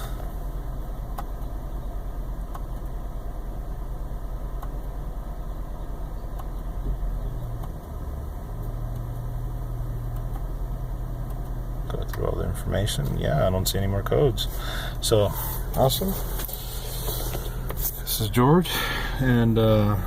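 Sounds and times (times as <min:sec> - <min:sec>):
car engine idling: 0:00.0 - 0:20.0
faint clicks: 0:01.1 - 0:01.8, 0:06.1 - 0:09.3, 0:10.0 - 0:10.5, 0:11.2 - 0:12.3.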